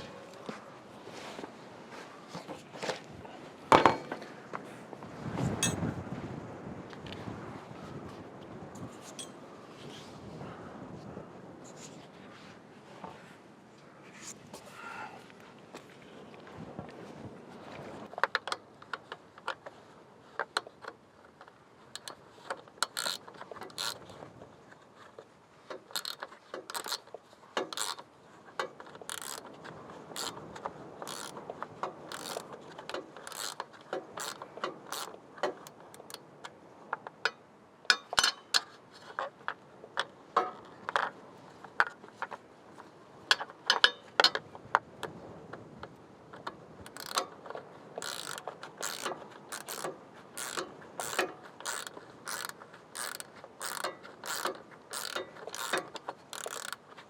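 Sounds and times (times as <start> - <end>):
hand tools clicking on metal: 22.8 - 24.0, 29.1 - 29.4, 31.1 - 31.4, 32.1 - 36.2, 46.9 - 47.4, 48.0 - 56.8.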